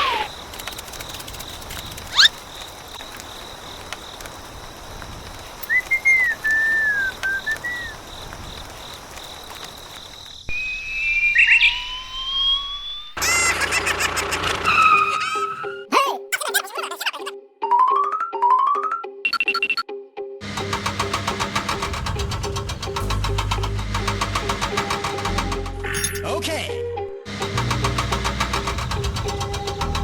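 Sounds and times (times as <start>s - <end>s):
whistle-like sounds: 5.6s - 8.0s, 10.5s - 13.4s.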